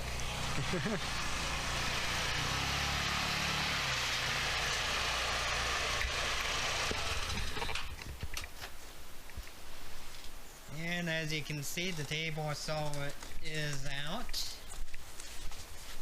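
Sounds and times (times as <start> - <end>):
road noise hiss: 0.0 - 7.9
vehicle engine running: 0.0 - 7.9.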